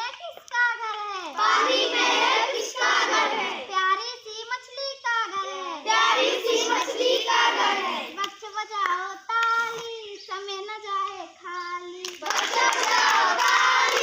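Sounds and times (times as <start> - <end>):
children singing in chorus: 1.4 - 3.7, 5.4 - 8.2, 12.3 - 14.0.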